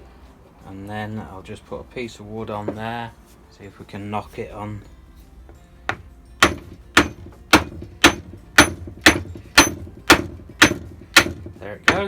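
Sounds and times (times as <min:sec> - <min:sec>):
hammer blows on wood: 0:05.9 - 0:12.0.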